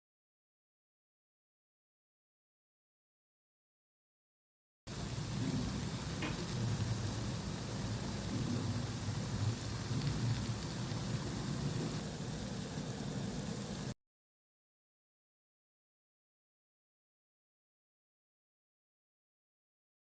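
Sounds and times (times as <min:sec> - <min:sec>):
food sizzling in hot oil: 0:04.9 - 0:14.0.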